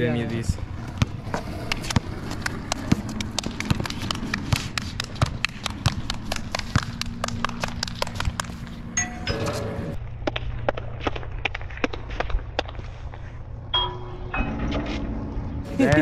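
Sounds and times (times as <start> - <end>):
basketball dribbling: 1.0 - 8.5.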